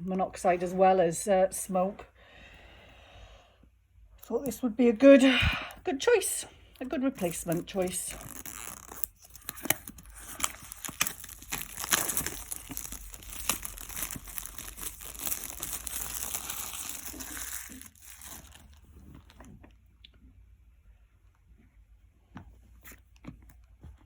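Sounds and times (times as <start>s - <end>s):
packaging crinkling and tearing: 7.1s - 19.6s.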